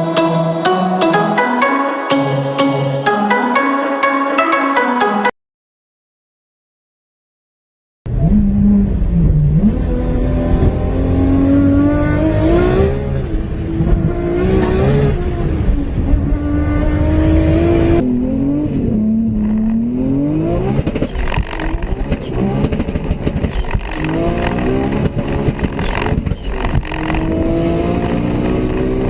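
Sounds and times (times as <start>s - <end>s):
car engine accelerating hard: 8.1s - 29.0s.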